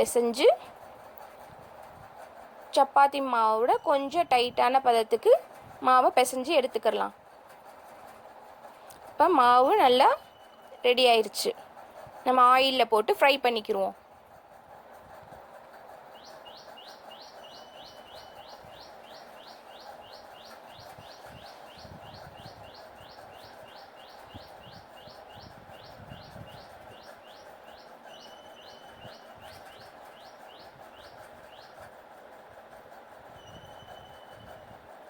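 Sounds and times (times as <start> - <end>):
bird chirping: 16.1 - 31.8.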